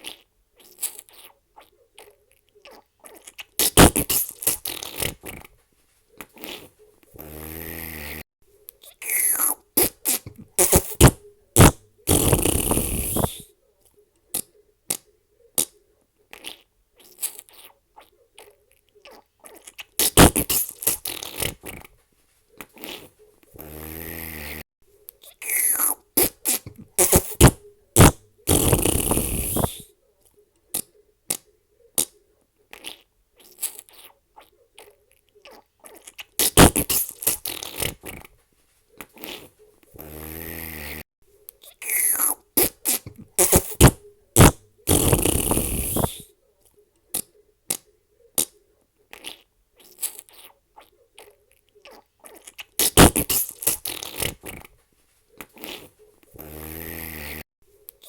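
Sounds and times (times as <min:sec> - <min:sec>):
fart sounds: 0:00.0 - 0:01.4, 0:02.7 - 0:05.5, 0:06.2 - 0:13.5, 0:15.6 - 0:17.8, 0:19.1 - 0:22.0, 0:22.6 - 0:24.6, 0:25.2 - 0:29.9, 0:30.7 - 0:34.2, 0:35.5 - 0:38.3, 0:39.0 - 0:41.0, 0:41.6 - 0:46.3, 0:48.4 - 0:50.6, 0:51.2 - 0:54.8, 0:55.4 - 0:57.5.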